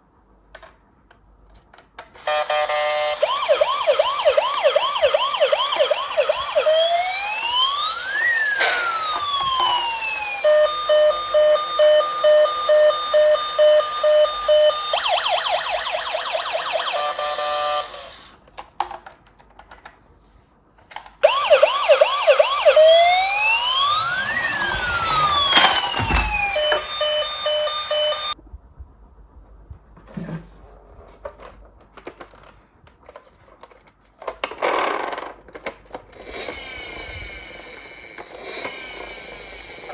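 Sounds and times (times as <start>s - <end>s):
toy electronic siren: 2.2s - 18.3s, 21.2s - 28.4s, 36.2s - 39.9s
thump: 25.0s - 26.5s.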